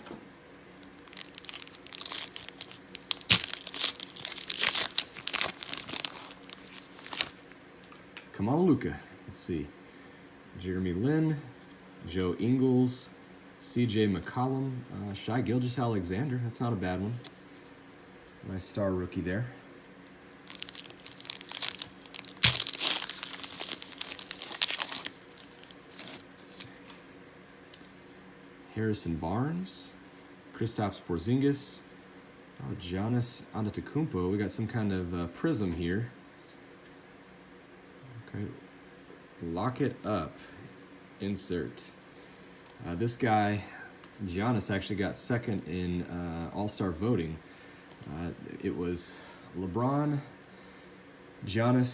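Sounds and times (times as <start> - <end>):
foil pack ripping: 0.8 - 8.0, 19.8 - 27.0
foil pack crinkling: 0.8 - 8.2, 19.8 - 27.0.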